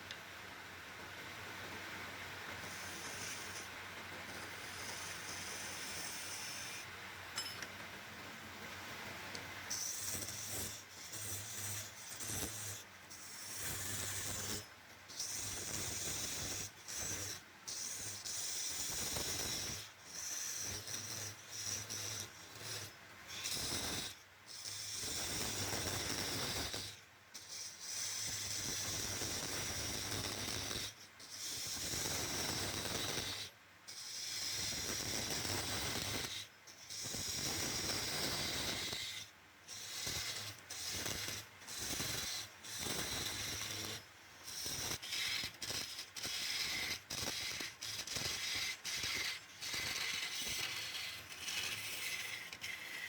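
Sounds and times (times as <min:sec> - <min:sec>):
lathe tool cutting wood: 0:42.2 - 0:53.0.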